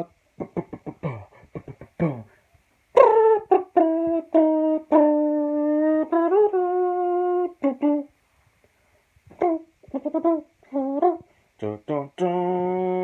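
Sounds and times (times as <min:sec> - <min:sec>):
man singing ringtone melody: 0:03.0 - 0:08.1, 0:09.3 - 0:13.0.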